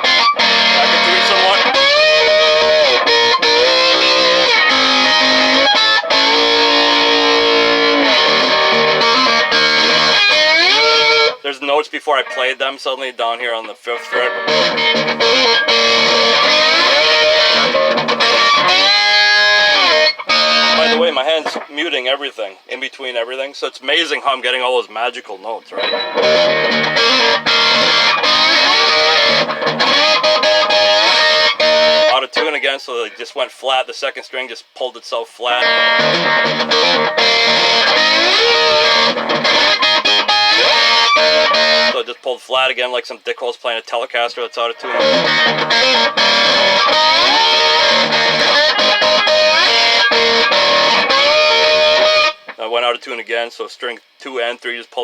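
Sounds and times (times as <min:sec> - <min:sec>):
slide electric guitar: 0:00.0 - 0:11.5, 0:13.6 - 0:21.7, 0:25.7 - 0:33.2, 0:35.5 - 0:42.1, 0:44.6 - 0:52.6.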